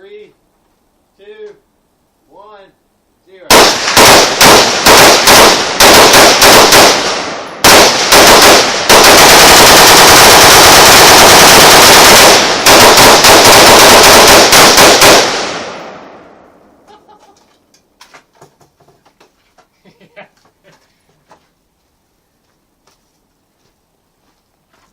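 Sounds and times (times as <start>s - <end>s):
rifles firing rapidly: 3.5s - 15.8s.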